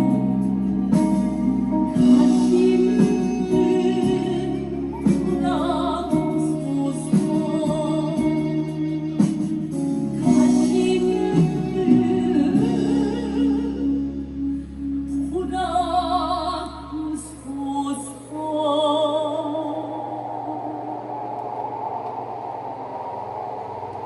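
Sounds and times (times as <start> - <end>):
person singing wavering: 19.0 - 22.4
sustained held tones: 19.3 - 24.0.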